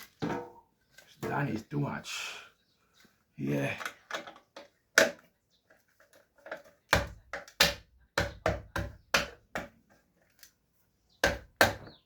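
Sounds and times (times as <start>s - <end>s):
hard objects tapping and knocking: 0.2s - 1.4s, 3.8s - 10.0s, 11.2s - 12.0s.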